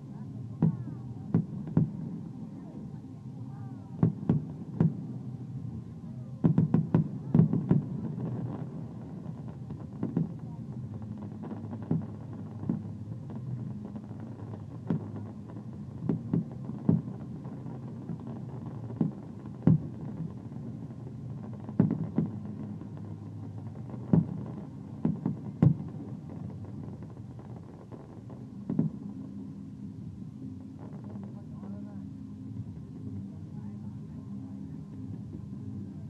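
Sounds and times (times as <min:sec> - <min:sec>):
steady low rumble: 0:00.0 - 0:36.0
fireworks bangs: 0:06.4 - 0:29.2.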